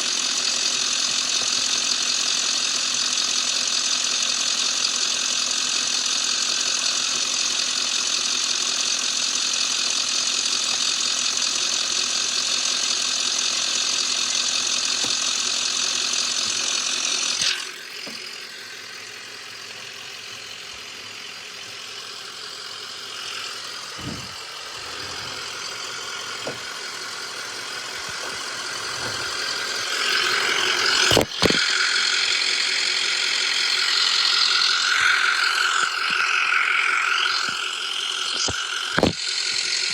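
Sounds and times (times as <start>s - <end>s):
engine idling: 0.0s - 39.9s
whir and hiss: 14.7s - 39.9s.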